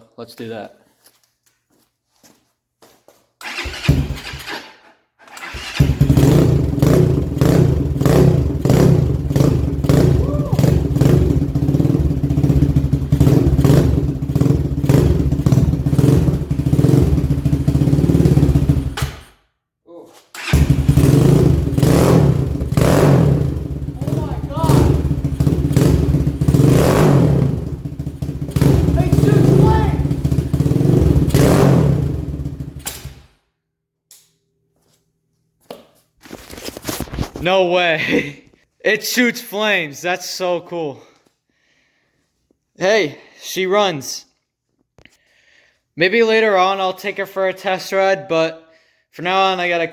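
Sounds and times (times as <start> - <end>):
dirt bike engine blipping: 3.4 - 4.5, 20.4 - 32.8
dirt bike engine revving: 3.4 - 4.5, 5.4 - 19.0, 20.4 - 32.8.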